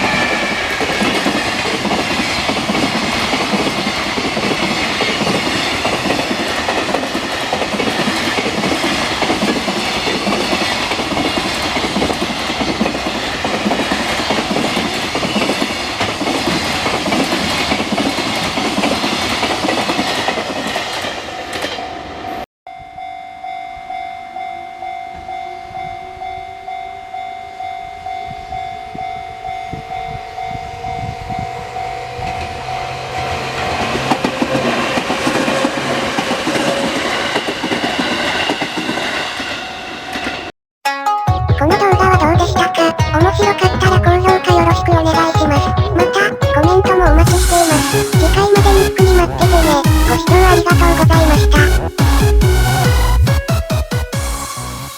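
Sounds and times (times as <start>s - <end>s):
approaching train whine and rumble: 0.0s - 22.4s, 27.9s - 40.5s
train wheels rolling on rails: 0.0s - 22.4s, 29.6s - 40.5s
level crossing warning bell: 22.8s - 33.2s, 45.4s - 54.9s.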